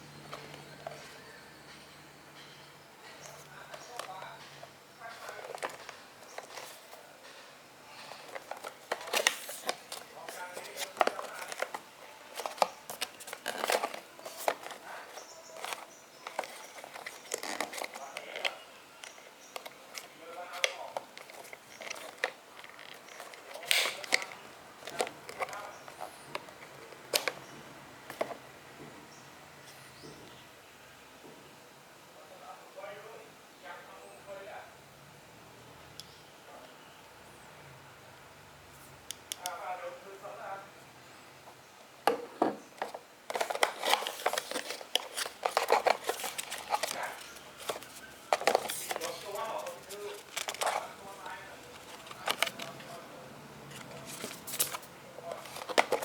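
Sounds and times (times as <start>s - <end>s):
plastic and cardboard rustling: 3.0s - 28.4s, 42.0s - 56.0s
packaging clicks: 8.2s - 27.5s, 43.3s - 53.0s, 53.7s - 56.0s.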